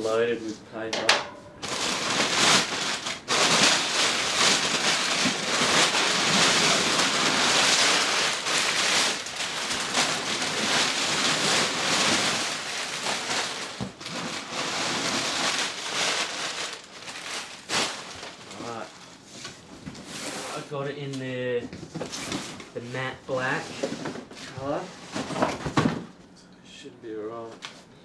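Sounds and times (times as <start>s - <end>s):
packing paper crinkling and rustling: 1.6s - 19.2s.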